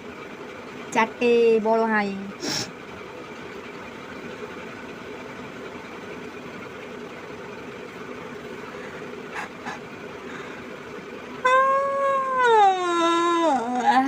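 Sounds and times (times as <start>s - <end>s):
background machine hum: 0.0s - 14.0s.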